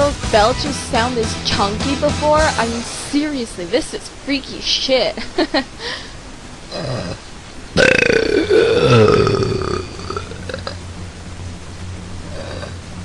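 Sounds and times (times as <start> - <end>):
woman belching: 7.8 - 10.8, 12.3 - 12.8.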